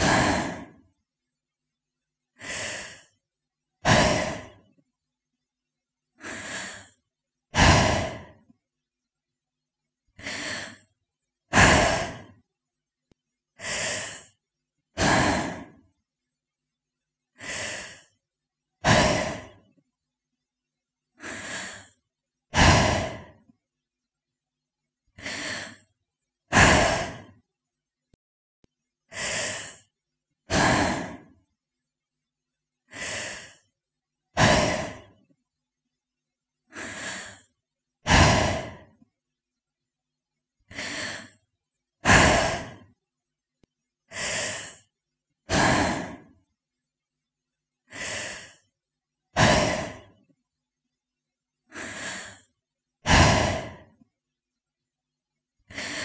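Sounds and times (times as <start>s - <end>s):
woman breathing slowly: 0.0s - 1.0s, 2.3s - 3.2s, 3.8s - 4.8s, 6.2s - 8.6s, 10.1s - 10.9s, 11.5s - 12.5s, 13.6s - 16.0s, 17.3s - 18.2s, 18.8s - 19.8s, 21.1s - 23.6s, 25.1s - 25.9s, 26.5s - 27.5s, 29.1s - 31.4s, 32.8s - 35.4s, 36.7s - 39.1s, 40.6s - 41.4s, 42.0s - 42.9s, 44.1s - 46.5s, 47.8s - 50.3s, 51.6s - 54.1s, 55.6s - 56.0s.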